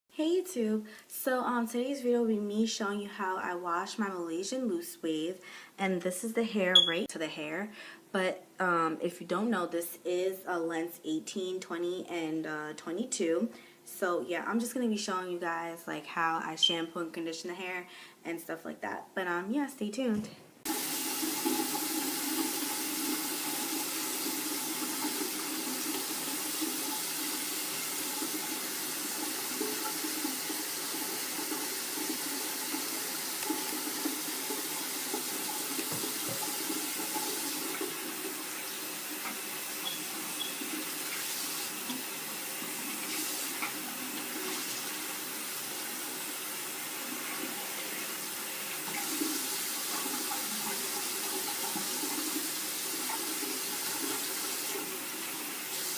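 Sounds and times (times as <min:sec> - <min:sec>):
tap water running into sink: 0:20.7 - 0:55.9.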